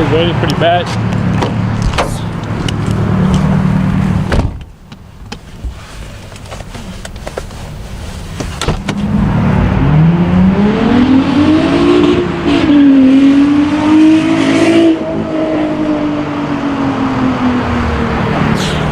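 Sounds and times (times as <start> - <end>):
car engine revving: 0.0 - 4.4, 8.5 - 18.9.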